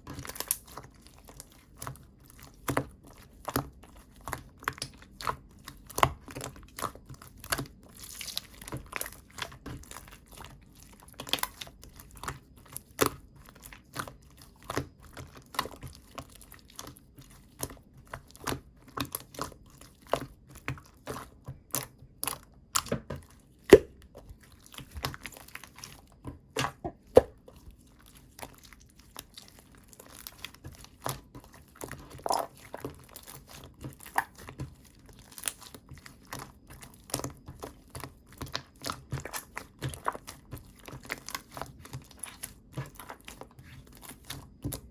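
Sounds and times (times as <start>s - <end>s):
slime clicking and popping: 23.7s - 24.1s, 32.0s - 32.6s.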